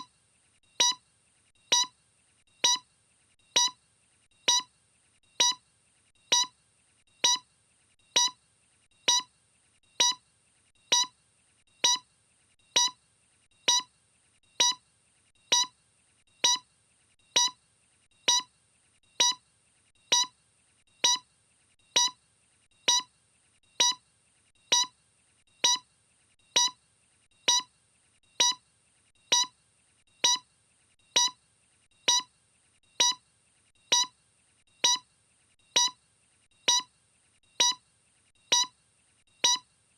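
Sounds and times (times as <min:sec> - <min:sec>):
short electronic beeps: 0:00.8 - 0:01.0, 0:01.7 - 0:01.9, 0:02.6 - 0:02.8, 0:03.6 - 0:03.8, 0:04.5 - 0:04.7, 0:05.4 - 0:05.6, 0:06.3 - 0:06.5, 0:07.2 - 0:07.4, 0:08.2 - 0:08.4, 0:09.1 - 0:09.3, 0:10.0 - 0:10.2, 0:10.9 - 0:11.1, 0:11.8 - 0:12.0, 0:12.8 - 0:13.0, 0:13.7 - 0:13.9, 0:14.6 - 0:14.8, 0:15.5 - 0:15.7, 0:16.4 - 0:16.6, 0:17.4 - 0:17.6, 0:18.3 - 0:18.5, 0:19.2 - 0:19.4, 0:20.1 - 0:20.3, 0:21.0 - 0:21.2, 0:22.0 - 0:22.2, 0:22.9 - 0:23.1, 0:23.8 - 0:24.0, 0:24.7 - 0:24.9, 0:25.6 - 0:25.8, 0:26.6 - 0:26.8, 0:27.5 - 0:27.7, 0:28.4 - 0:28.6, 0:29.3 - 0:29.5, 0:30.2 - 0:30.4, 0:31.2 - 0:31.4, 0:32.1 - 0:32.3, 0:33.0 - 0:33.2, 0:33.9 - 0:34.1, 0:34.8 - 0:35.0, 0:35.8 - 0:36.0, 0:36.7 - 0:36.9, 0:37.6 - 0:37.8, 0:38.5 - 0:38.7, 0:39.4 - 0:39.6.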